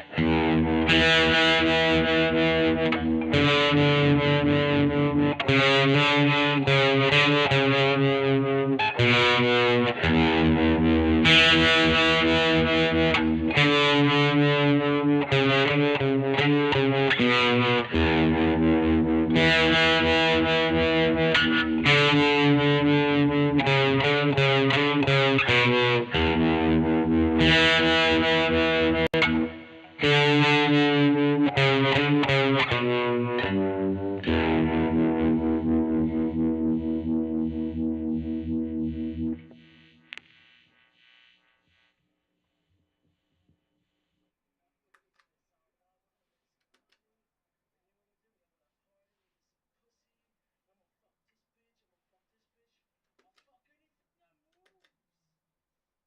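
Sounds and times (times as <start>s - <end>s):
distorted electric guitar chords: 0.0s - 41.9s.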